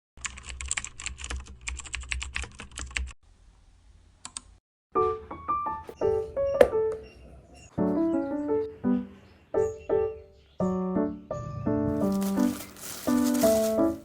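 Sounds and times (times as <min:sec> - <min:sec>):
rapid keyboard typing: 0:00.2 - 0:03.2
soft piano music: 0:04.9 - 0:14.0.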